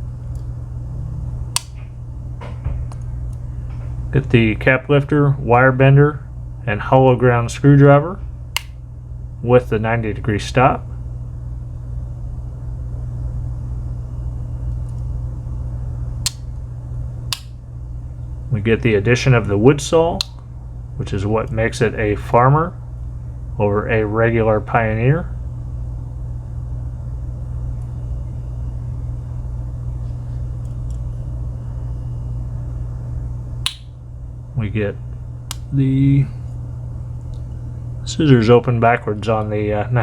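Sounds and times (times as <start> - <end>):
low rumble or hum: 0.0 - 40.0
pocket knife click: 1.6 - 1.8.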